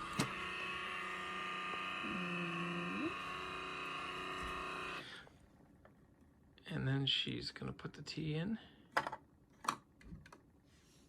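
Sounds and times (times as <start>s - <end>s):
coffee maker pump buzzing: 0.0s - 5.2s.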